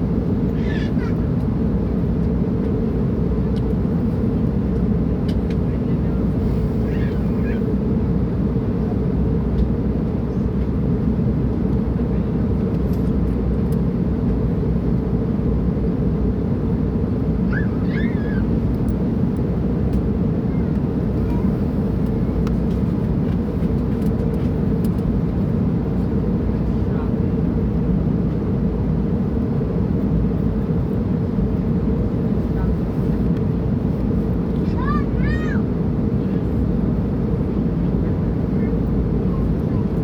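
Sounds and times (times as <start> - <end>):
airliner cabin engine drone: 0.0 - 40.0.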